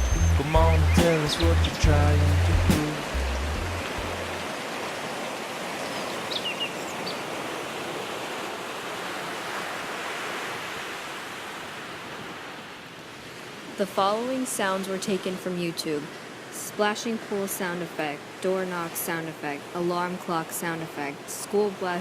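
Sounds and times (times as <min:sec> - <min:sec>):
high bird chirps: 0:00.0 - 0:01.8
song bass notes: 0:00.0 - 0:04.4
rushing water: 0:00.0 - 0:22.0.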